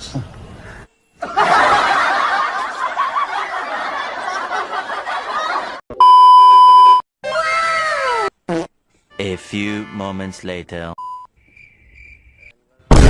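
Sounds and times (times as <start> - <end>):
crowd laughing: 1.2 - 5.8
censor beep: 6.0 - 7.0, 11.0 - 11.3.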